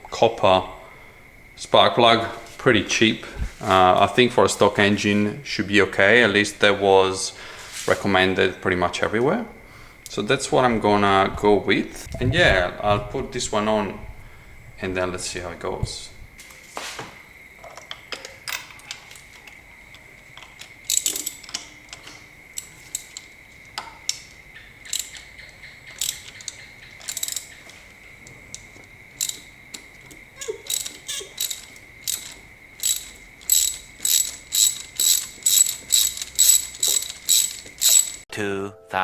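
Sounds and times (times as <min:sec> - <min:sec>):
ratchet pawl clicking: 0:18.2 - 0:38.3.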